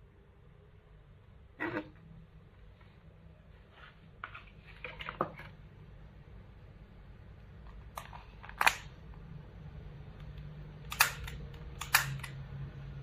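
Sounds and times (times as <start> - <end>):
airsoft pistol handling clicks: 10.9 - 12.4.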